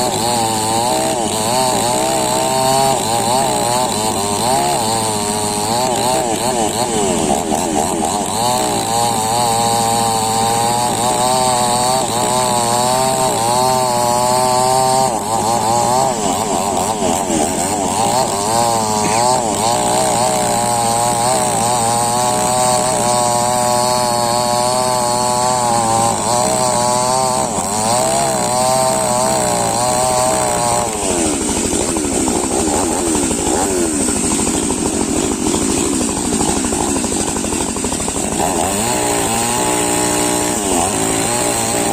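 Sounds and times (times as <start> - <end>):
chainsaw running: 0.0 - 41.9.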